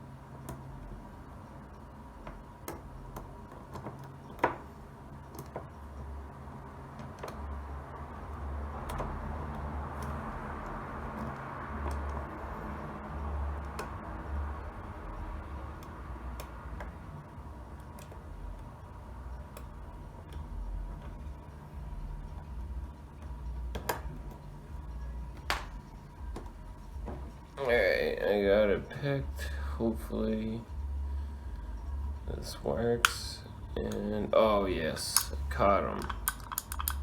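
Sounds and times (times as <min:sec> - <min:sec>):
lock pick clicking in lock: 0:36.0 - 0:37.0.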